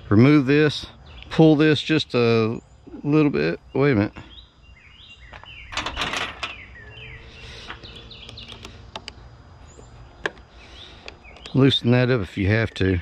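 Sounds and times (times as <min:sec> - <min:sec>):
birds chirping: 0:00.0 - 0:13.0
mower parts clicking and rattling: 0:05.7 - 0:06.7.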